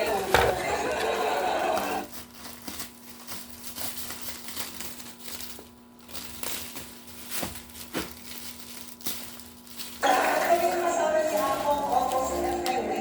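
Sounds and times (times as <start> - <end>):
packaging crinkling and rustling: 0.0 - 13.0.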